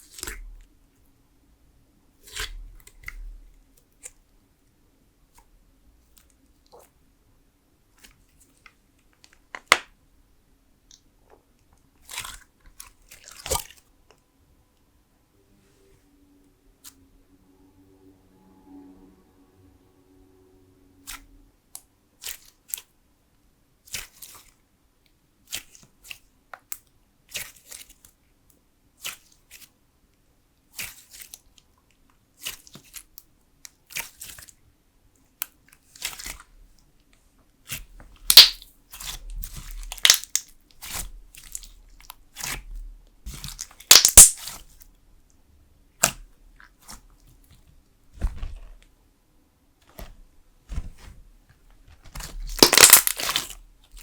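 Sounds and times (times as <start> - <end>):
slime squelching under fingers: 37.7 - 42.7, 43.3 - 44.8, 52.0 - 54.0.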